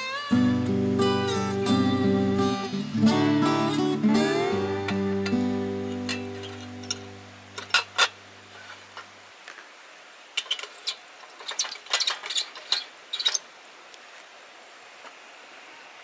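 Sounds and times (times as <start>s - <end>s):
strummed guitar: 0.0s - 8.3s.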